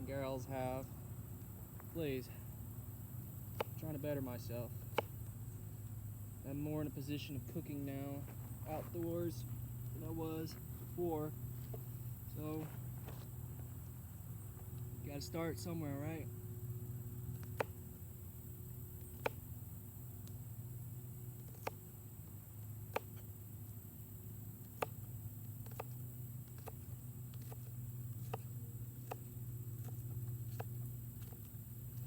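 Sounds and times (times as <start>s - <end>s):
knife chopping with sharp knocks: 3.5s - 4.0s, 4.8s - 5.2s, 19.1s - 19.5s, 21.4s - 21.8s, 22.9s - 23.3s, 24.8s - 25.0s, 25.6s - 31.4s.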